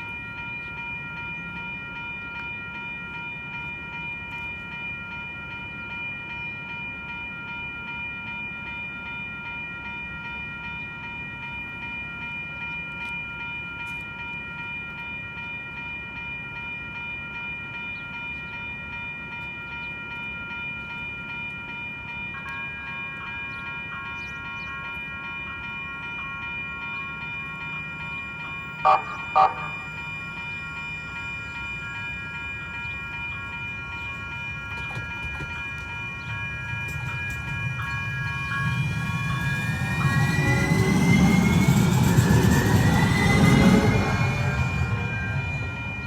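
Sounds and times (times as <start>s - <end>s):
low train rumble: 0.0s - 46.0s
locomotive air horn chord: 28.8s - 30.0s.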